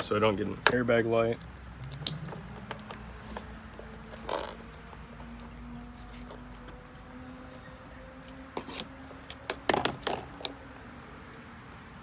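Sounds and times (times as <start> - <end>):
small clicks and rattles of wires: 1.2 - 6.8.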